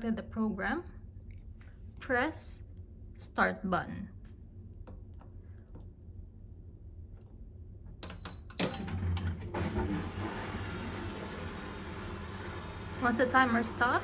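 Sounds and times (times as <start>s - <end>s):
washing machine clicks: 7.2s - 10.0s
water filling washing machine: 8.0s - 14.0s.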